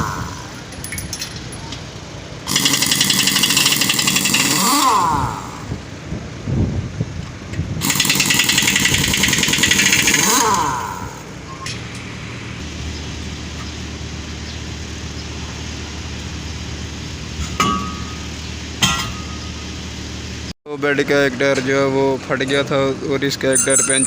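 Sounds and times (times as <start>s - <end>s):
pneumatic impact wrench rattling: 0.0s - 1.9s, 2.5s - 5.8s, 7.8s - 12.1s
low engine or compressor hum: 0.0s - 24.0s.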